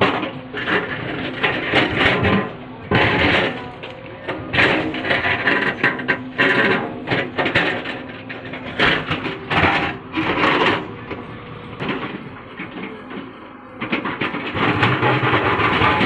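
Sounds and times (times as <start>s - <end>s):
backhoe diesel engine: 0.0s - 16.0s
bucket scraping and clattering on rock: 11.8s - 16.0s.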